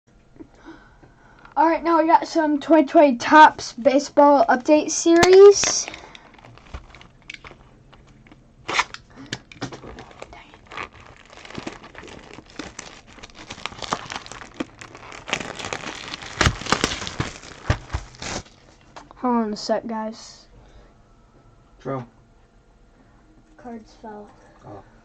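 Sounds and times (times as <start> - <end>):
plastic wrapping crinkling and tearing: 5.2 - 18.9.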